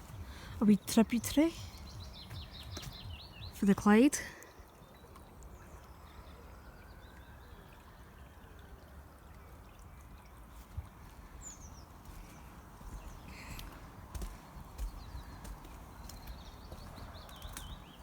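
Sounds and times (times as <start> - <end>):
high bird chirp: 0.0 - 4.1
stream trickling: 0.0 - 18.0.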